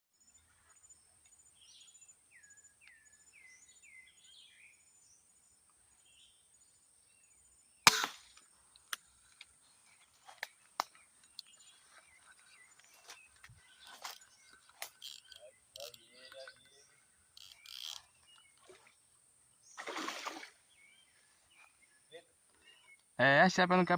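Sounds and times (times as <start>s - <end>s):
birds calling: 0.3s - 23.9s
crossbow firing snap: 7.8s - 8.4s
high insect buzz: 17.2s - 18.9s.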